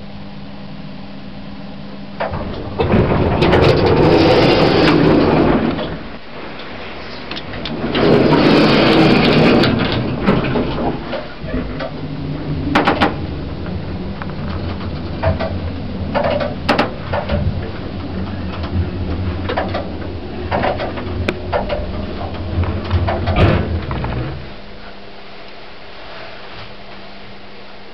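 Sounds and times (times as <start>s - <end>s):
stair lift motor hum: 1.7s - 27.4s
door-like rattle: 2.2s - 6.1s, 7.4s - 24.6s
mechanism clicks and knocks: 2.2s - 6.7s, 7.3s - 24.5s.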